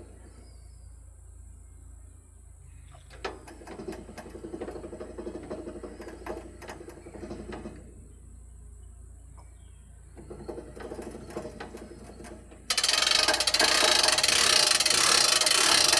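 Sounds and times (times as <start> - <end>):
metal mechanism clicking and rattling: 10.3 - 15.9.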